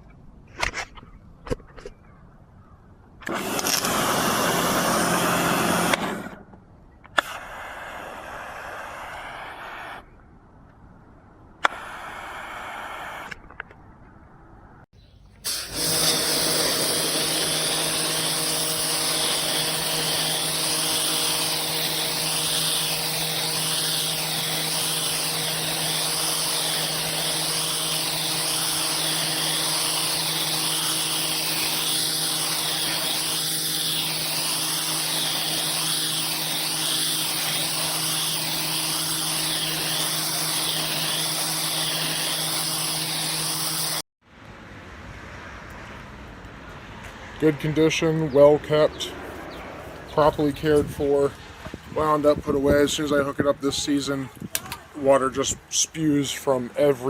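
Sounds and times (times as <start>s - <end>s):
pressure washer spraying: 7.2s - 10.0s, 15.4s - 44.0s.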